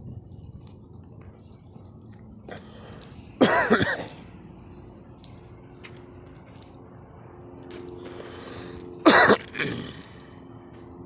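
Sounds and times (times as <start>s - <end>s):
person coughing: 3.4s - 4.2s, 9.0s - 10.0s.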